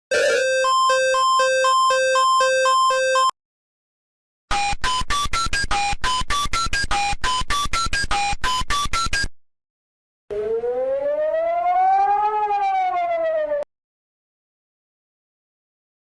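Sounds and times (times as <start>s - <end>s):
rising electronic alarm beeps: 0.1s - 3.3s
siren rising in pitch: 0.1s - 3.3s, 10.3s - 13.7s.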